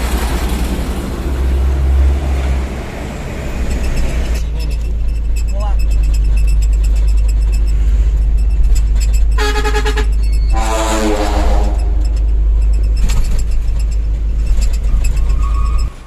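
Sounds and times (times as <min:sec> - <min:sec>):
heavy low rumble: 0:00.0 - 0:16.0
truck air horn blasts: 0:09.4 - 0:12.2.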